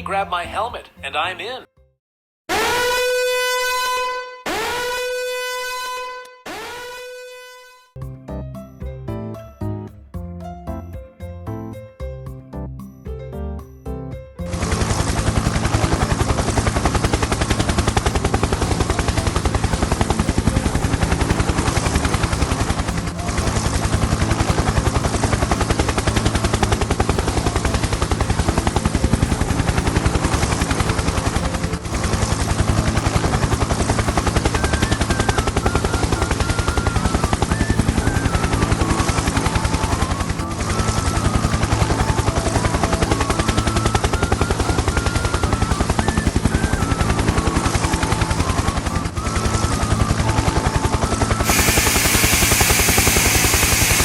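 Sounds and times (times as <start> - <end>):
helicopter rotor chopping: 14.5 - 54.0.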